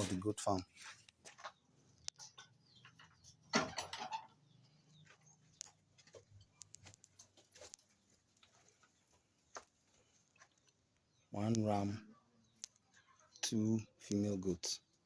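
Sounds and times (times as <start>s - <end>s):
faint clicks and rustling: 4.7s - 11.6s.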